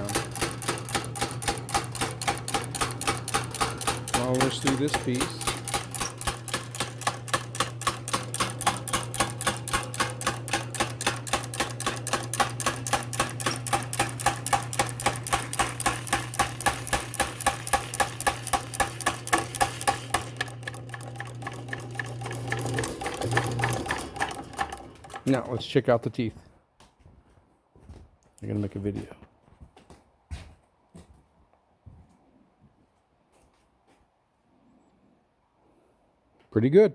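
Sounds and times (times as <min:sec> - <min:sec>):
motor humming: 0:00.0 - 0:25.7
machine punch clacking: 0:00.0 - 0:25.8.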